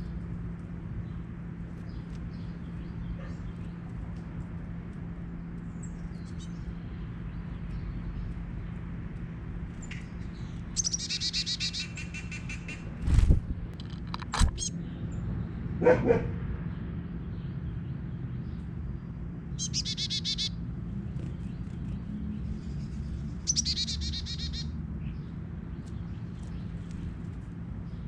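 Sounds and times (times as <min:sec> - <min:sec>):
songbirds chirping: 0:00.0 - 0:28.0
steady low hum: 0:00.0 - 0:28.0
bird trills: 0:09.8 - 0:12.9, 0:19.5 - 0:20.6, 0:22.6 - 0:24.8.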